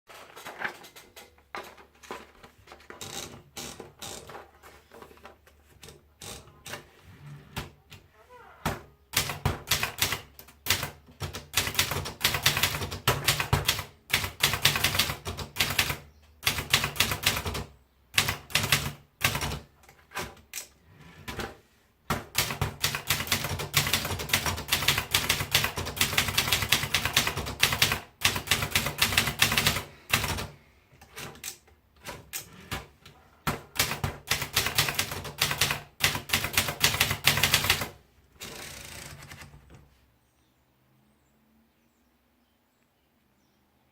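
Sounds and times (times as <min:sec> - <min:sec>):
typewriter typing: 0:09.1 - 0:20.7, 0:22.1 - 0:39.7.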